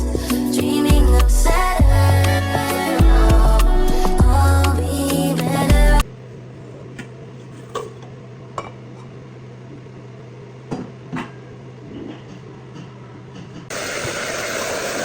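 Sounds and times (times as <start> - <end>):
background music: 0.0 - 6.1.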